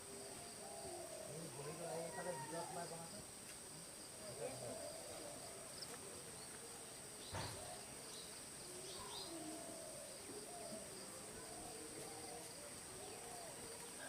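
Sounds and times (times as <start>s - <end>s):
faint distant voices: 0.0s - 14.0s
insects chirring: 0.0s - 14.0s.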